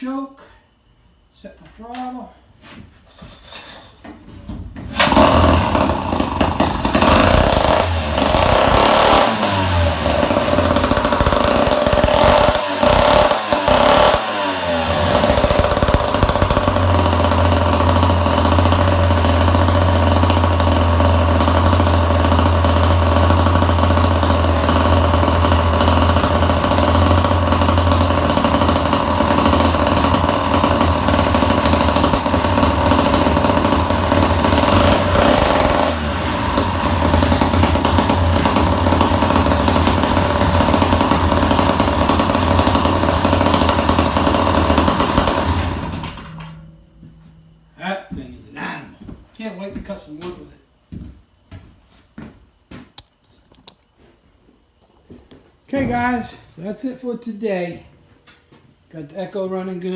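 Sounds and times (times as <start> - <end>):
chainsaw engine revving: 5.0 - 46.6.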